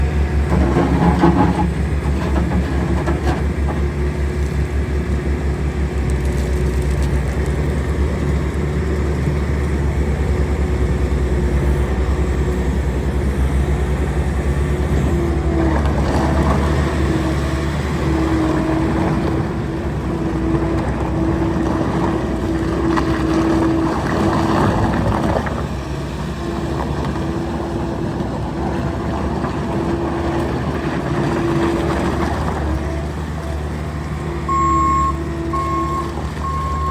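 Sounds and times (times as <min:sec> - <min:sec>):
diesel engine rumbling: 0:00.0 - 0:36.9.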